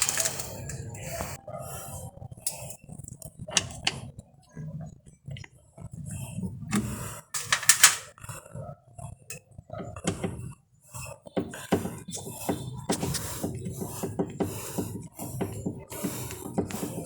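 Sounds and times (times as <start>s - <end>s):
hand tools clinking on metal: 0.0s - 1.0s, 7.4s - 8.1s.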